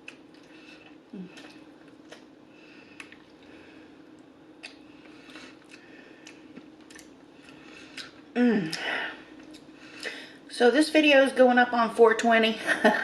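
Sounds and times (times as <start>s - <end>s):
faint steady hum: 0.0s - 13.0s
chewing crunches: 2.9s - 3.5s, 4.1s - 8.2s
wet mouth clicks: 4.6s - 4.8s.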